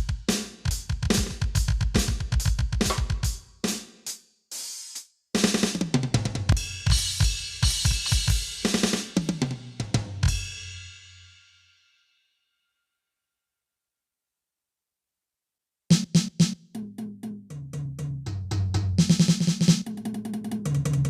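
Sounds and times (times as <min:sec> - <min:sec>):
electronic drum fills: 0:00.8 - 0:03.4, 0:15.9 - 0:21.0.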